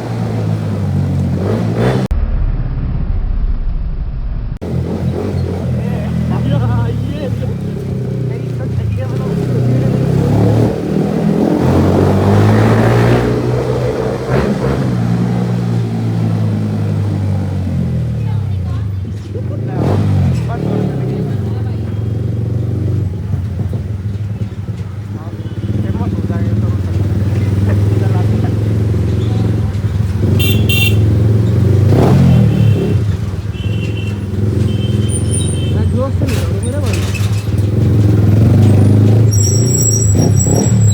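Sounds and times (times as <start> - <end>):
motorcycle engine with loud exhaust: 0.0 - 2.2, 4.6 - 40.9
horn toots: 30.2 - 36.0, 38.6 - 40.9.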